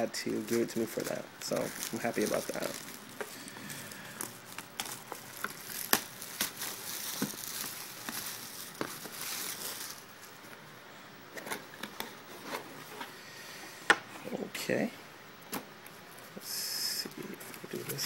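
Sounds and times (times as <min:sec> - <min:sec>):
packaging crinkling and rustling: 0:00.0 - 0:10.6, 0:17.1 - 0:18.0.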